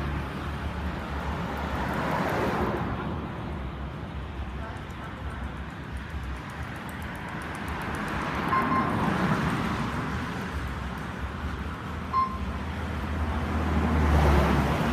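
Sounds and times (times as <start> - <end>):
road traffic noise: 0.0 - 14.9
vehicle going by: 5.9 - 14.9
short high electronic beep: 12.1 - 12.5.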